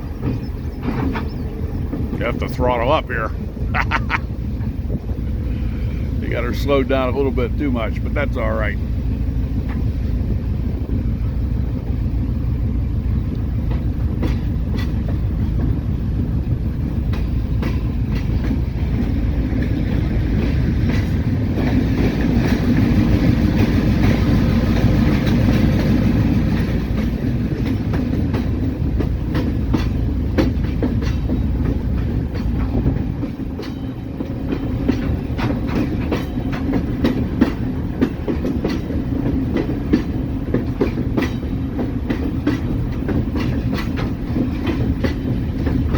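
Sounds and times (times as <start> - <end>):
wheels clacking over rail joints: 0.0 - 3.6, 4.2 - 45.9
locomotive engine drone: 0.0 - 45.9.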